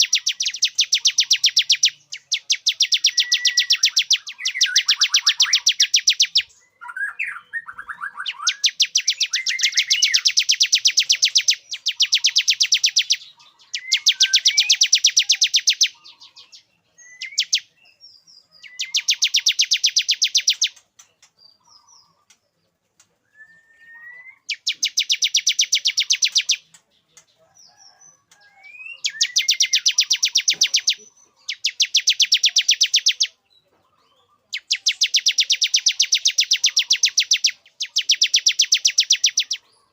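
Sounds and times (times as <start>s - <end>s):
bird chirps and whistled notes: 0.0s - 22.3s, 23.2s - 26.8s, 27.6s - 39.7s
bird rapid trills: 34.6s - 39.6s.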